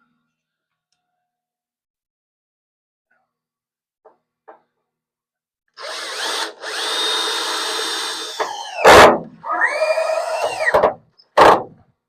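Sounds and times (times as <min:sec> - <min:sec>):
cordless drill motor whining: 0:05.8 - 0:10.8
loud clunk: 0:08.4 - 0:09.4, 0:10.5 - 0:11.8.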